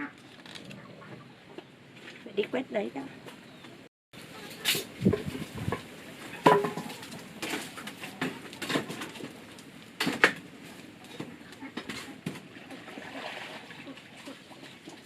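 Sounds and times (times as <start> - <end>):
hard objects knocking and clattering: 4.8 - 9.4.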